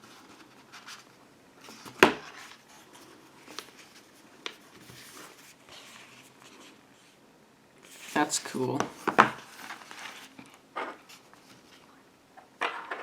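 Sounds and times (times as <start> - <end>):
faint rustling: 7.8 - 12.0.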